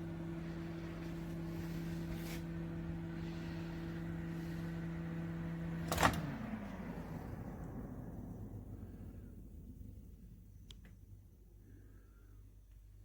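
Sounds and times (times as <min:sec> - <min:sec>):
microwave oven humming: 0:00.0 - 0:13.0
microwave oven click: 0:05.1 - 0:06.8.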